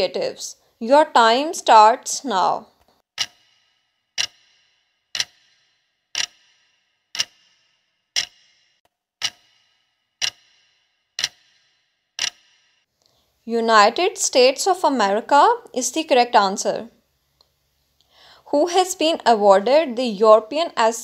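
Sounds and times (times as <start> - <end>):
clock ticking: 3.2 - 12.8.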